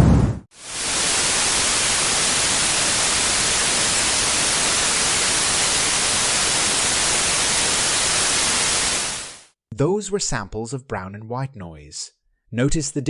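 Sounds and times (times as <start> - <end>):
white noise hiss: 0.6 - 9.5.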